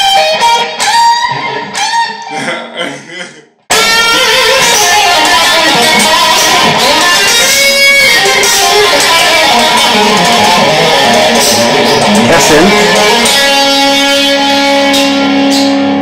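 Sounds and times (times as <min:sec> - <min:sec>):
electric guitar shred lead: 0:00.0 - 0:16.0.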